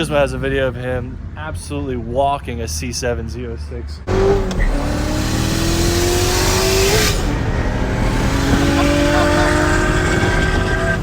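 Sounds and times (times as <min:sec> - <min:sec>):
car engine accelerating hard: 0:04.1 - 0:11.0.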